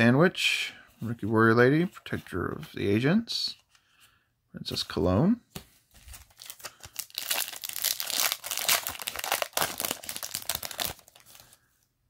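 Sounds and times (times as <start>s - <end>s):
foil wrapper crinkling and tearing: 6.0s - 11.5s.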